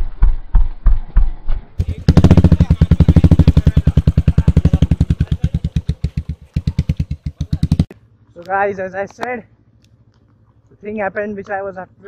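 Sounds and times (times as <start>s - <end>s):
motorcycle engine exhaust thumps: 0.0s - 8.4s.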